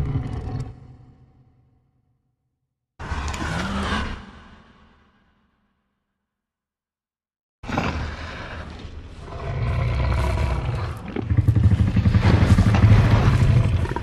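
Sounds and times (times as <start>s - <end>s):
dinosaur roar: 0.0s - 1.3s, 7.6s - 14.0s.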